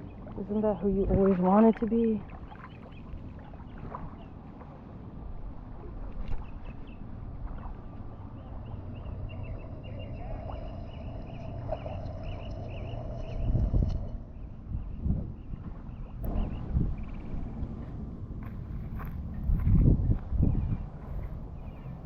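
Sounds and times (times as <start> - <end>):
low rumble of wind and water: 0.0 - 22.0
bird chirping: 8.2 - 17.4.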